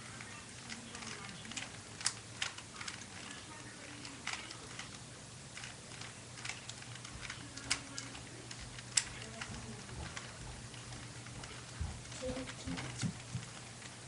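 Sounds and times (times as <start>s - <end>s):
puzzle cube clicking: 0.2s - 10.4s.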